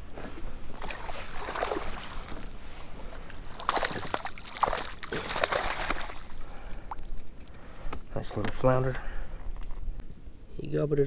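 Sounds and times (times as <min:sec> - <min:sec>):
water splashing against kayak: 0:00.7 - 0:07.2.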